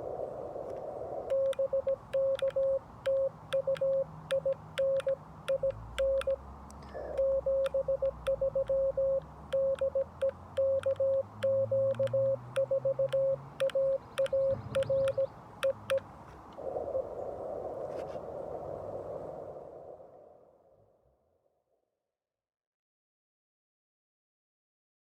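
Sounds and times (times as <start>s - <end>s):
morse code sidetone: 1.3s - 6.4s, 7.0s - 16.0s
morse paddle clicks: 1.3s - 16.1s.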